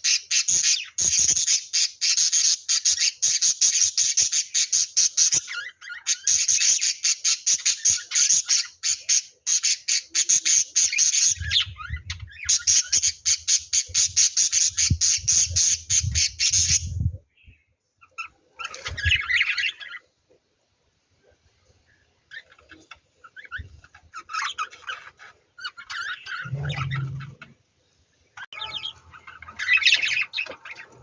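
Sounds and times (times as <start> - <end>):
lovebirds squawking: 22.3 - 27.5, 28.5 - 31.0
low thumping: 26.4 - 27.4.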